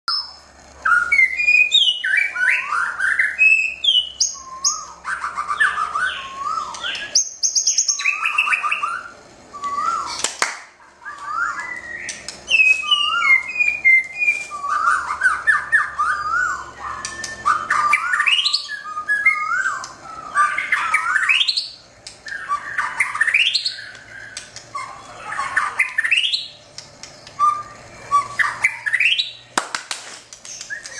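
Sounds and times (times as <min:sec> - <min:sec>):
bird singing whistled song: 0:00.1 - 0:10.3, 0:11.0 - 0:29.5, 0:30.5 - 0:30.9.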